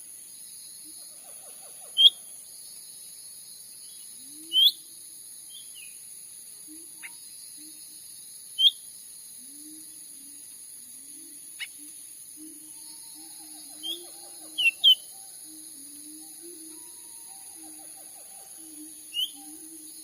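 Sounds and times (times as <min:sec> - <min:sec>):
high-pitched insect hiss: 0:00.0 - 0:20.0
bird chirping: 0:11.6 - 0:20.0.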